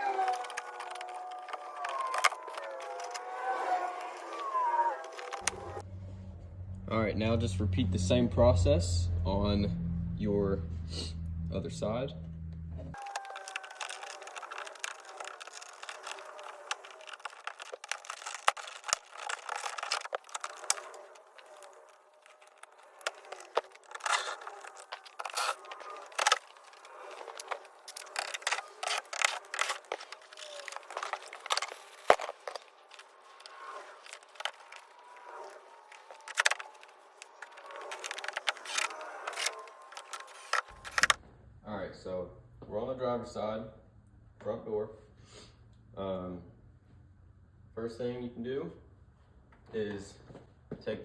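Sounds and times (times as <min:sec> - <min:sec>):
hand tools clicking and scraping: 0:00.0 - 0:05.8, 0:12.9 - 0:41.2.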